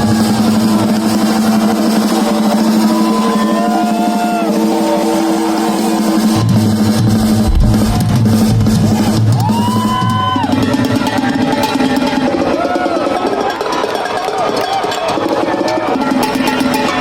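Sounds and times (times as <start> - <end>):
rock drum solo: 2.3 - 11.5
heavy low end: 6.3 - 10.5.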